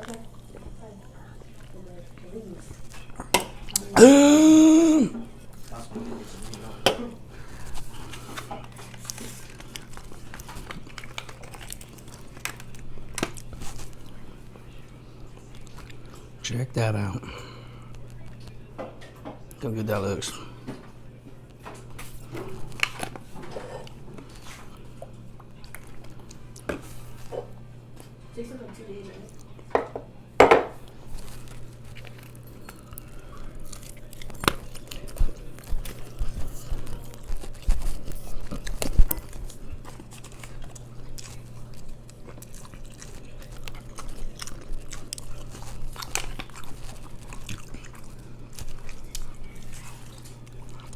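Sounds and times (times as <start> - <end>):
person chewing: 2.8 - 5.6, 7.4 - 14.2, 31.0 - 50.9
eating clicks and crinkling: 7.4 - 16.4, 21.5 - 27.3, 30.9 - 50.9.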